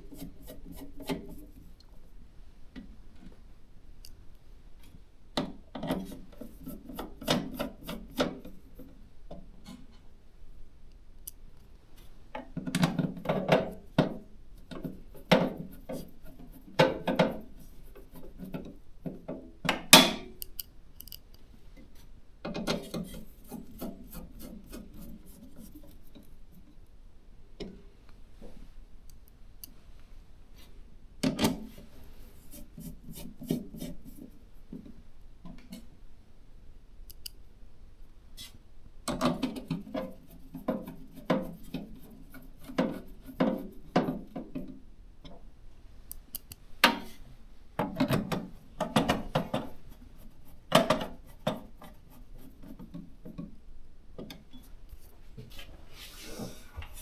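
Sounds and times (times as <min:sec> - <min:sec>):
scraping and rubbing: 0:00.0 - 0:01.7, 0:22.8 - 0:26.2, 0:32.1 - 0:34.4, 0:48.7 - 0:53.4.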